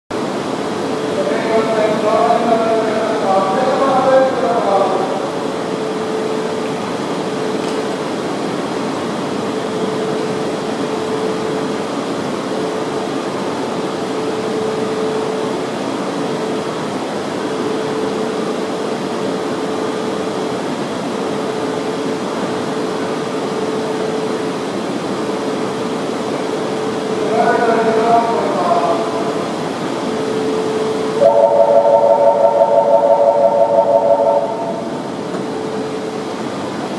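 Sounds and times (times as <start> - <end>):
train fans whirring hum: 0.1 - 36.9
faint held tone: 30.1 - 36.0.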